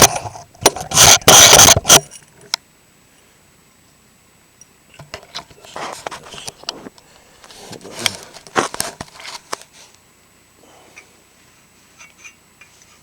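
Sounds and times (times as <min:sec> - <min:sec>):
metal tool scraping and rattling: 0:00.0 - 0:02.2.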